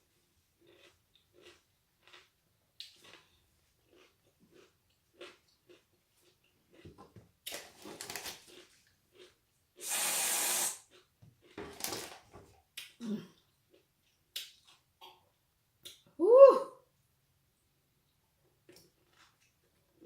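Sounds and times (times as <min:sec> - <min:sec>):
whipped cream can spraying: 0:09.8 - 0:10.8.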